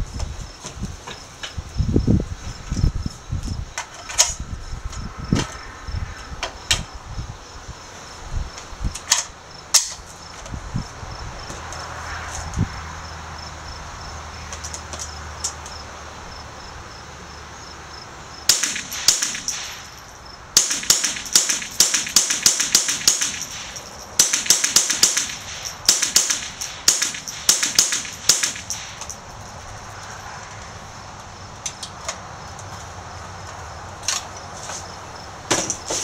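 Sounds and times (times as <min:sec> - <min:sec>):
rifle gunshots: 0:18.5 - 0:20.0, 0:20.6 - 0:29.2.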